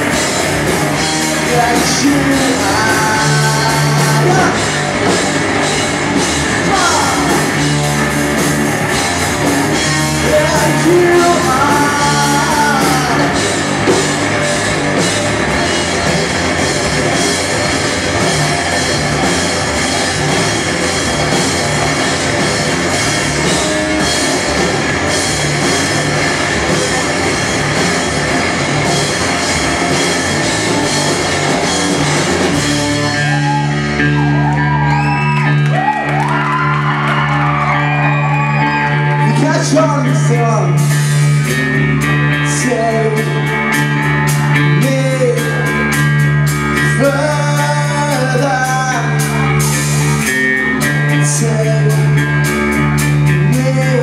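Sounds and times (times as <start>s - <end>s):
rock band playing live: 0.0s - 54.0s
person singing: 1.4s - 4.9s, 6.5s - 7.7s, 10.1s - 13.7s, 42.3s - 43.6s, 44.3s - 45.9s, 46.8s - 49.9s, 53.3s - 54.0s.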